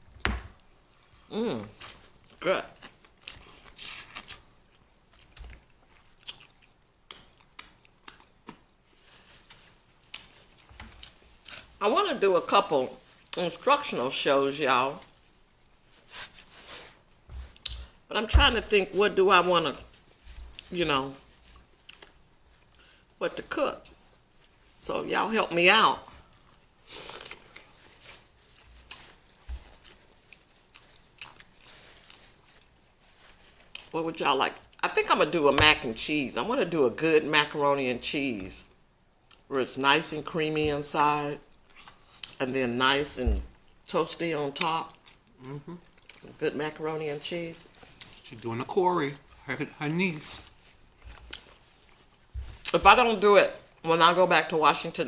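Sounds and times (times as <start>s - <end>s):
chewing: 2.7s - 11.8s, 21.3s - 22.9s, 26.2s - 33.9s, 41.5s - 42.4s, 44.9s - 46.3s, 47.6s - 48.4s, 50.3s - 52.7s.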